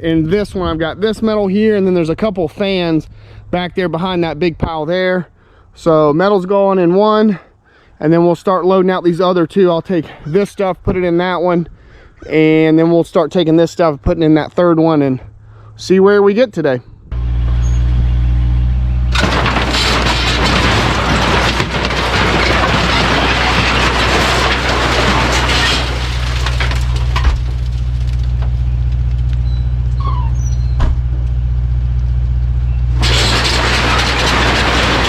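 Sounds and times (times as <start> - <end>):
rush of working noise: 19.1 - 29.3, 32.9 - 35.0.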